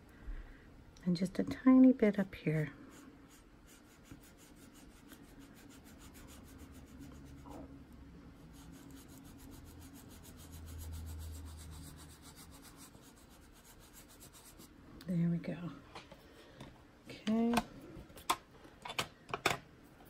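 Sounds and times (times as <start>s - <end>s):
tool rubbing on paper: 2.9s - 7.6s, 8.4s - 14.8s.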